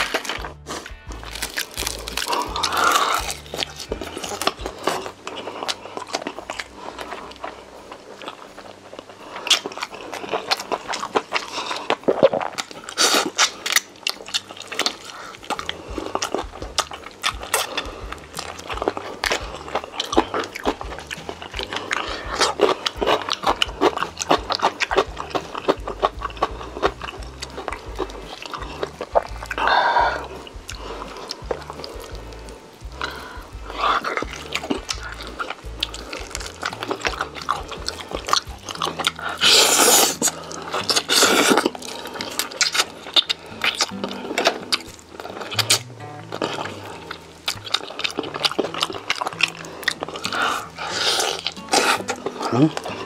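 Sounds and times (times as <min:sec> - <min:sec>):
crunching crispy food: 0:00.0 - 0:53.0
soft background music: 0:00.0 - 0:53.0
wet chewing: 0:00.0 - 0:53.0
hum-like vocal sound: 0:28.0 - 0:42.3, 0:50.0 - 0:53.0.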